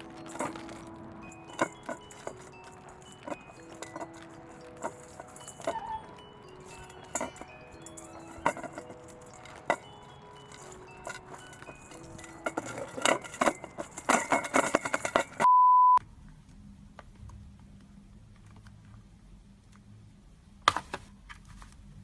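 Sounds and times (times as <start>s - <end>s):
small clicks and clinks: 0.0s - 15.5s
steady beep tone: 15.4s - 16.0s.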